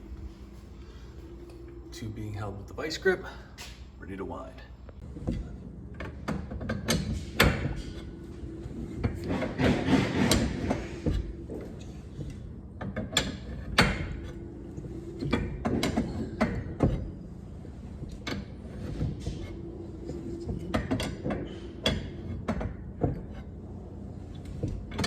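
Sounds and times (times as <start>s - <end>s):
metal scraping: 7.1s - 11.3s.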